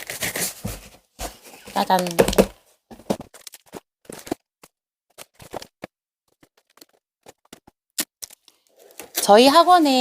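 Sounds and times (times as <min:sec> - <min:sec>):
cardboard scraping and rustling: 0:00.0 - 0:02.0.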